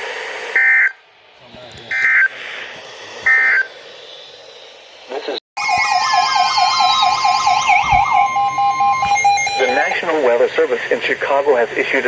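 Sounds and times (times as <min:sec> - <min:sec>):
steady attention tone: 0:00.5 - 0:10.8
digital data tones: 0:03.2 - 0:03.8, 0:05.6 - 0:10.0
warbling siren-like alarm: 0:03.2 - 0:03.9, 0:05.6 - 0:10.0.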